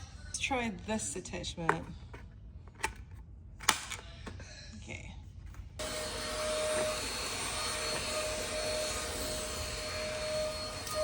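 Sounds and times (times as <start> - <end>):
vacuum cleaner running: 5.8 - 11.0.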